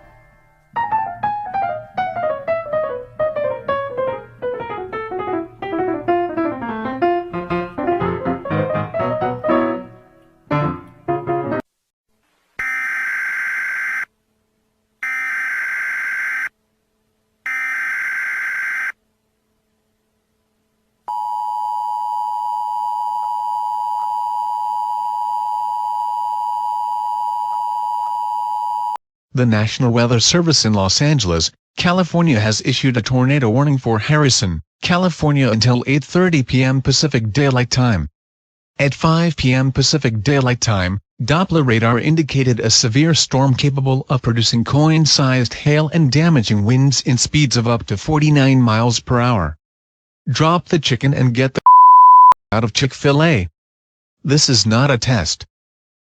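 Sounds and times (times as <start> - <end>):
piano melody: 0.0 - 11.7.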